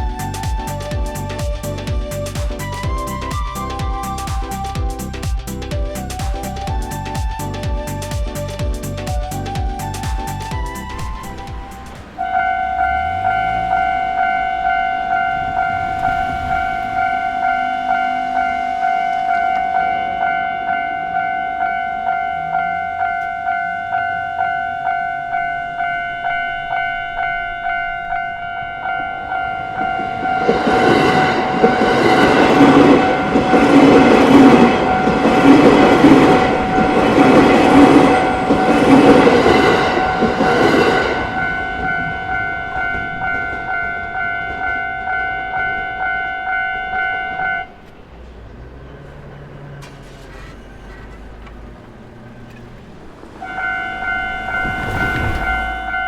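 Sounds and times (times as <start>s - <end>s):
train wheels clattering: 28.8s - 56.0s.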